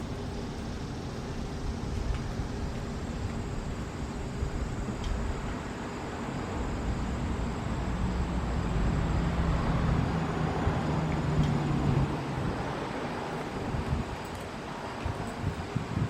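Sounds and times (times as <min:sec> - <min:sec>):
wind rumble: 0:00.0 - 0:16.0.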